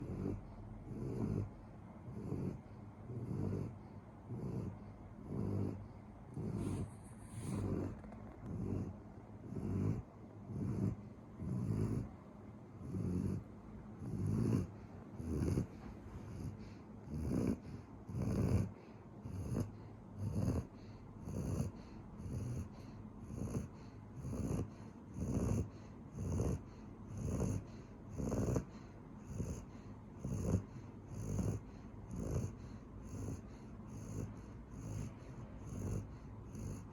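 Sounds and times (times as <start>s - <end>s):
dog snoring: 0.0s - 12.2s, 12.8s - 36.9s.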